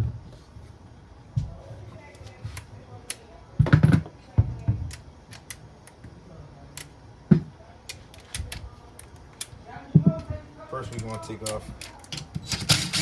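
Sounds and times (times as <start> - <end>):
metal tools clinking: 4.9 - 6.1, 7.9 - 9.6, 10.8 - 13.0.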